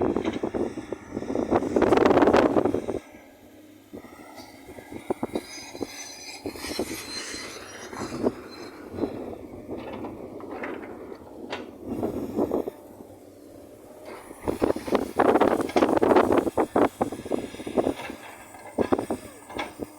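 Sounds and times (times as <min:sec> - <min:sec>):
metal on metal squeal: 0:05.4 - 0:09.2.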